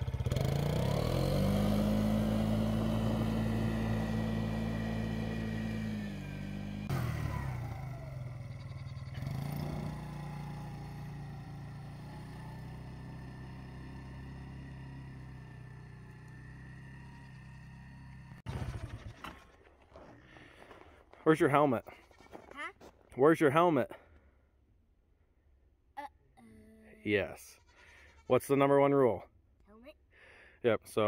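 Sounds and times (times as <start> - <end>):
lower engine note: 0.0 - 19.1
small atv engine revving: 0.0 - 20.1.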